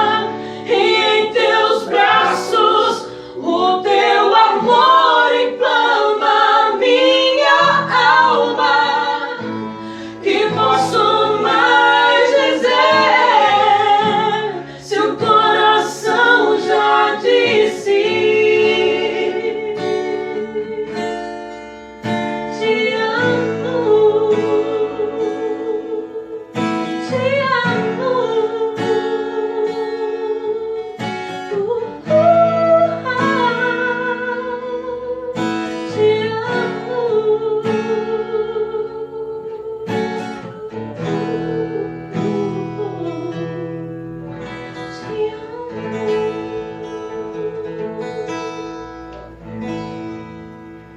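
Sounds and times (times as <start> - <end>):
person singing worship song: 0.0 - 20.8
acoustic guitar: 0.0 - 50.9.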